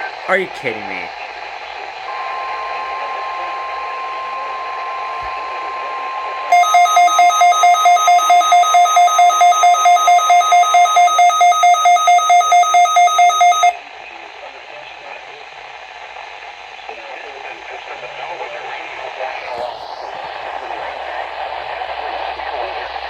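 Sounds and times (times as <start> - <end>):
steady warning tone: 2.1 - 13.8
loud pulsing electronic beep: 5.7 - 13.8.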